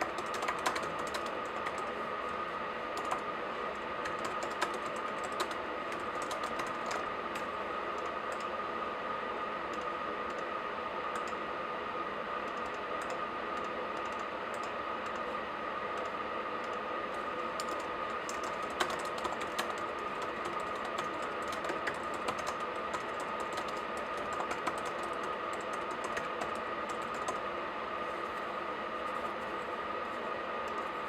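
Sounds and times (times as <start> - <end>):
keyboard typing: 0.0 - 2.0, 2.9 - 3.2, 4.0 - 8.5, 11.1 - 11.4, 12.5 - 15.2, 17.6 - 27.4
faint hum: 0.0 - 31.0.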